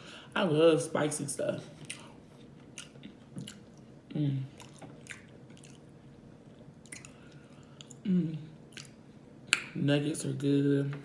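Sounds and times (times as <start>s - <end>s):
person chewing: 1.8s - 9.7s.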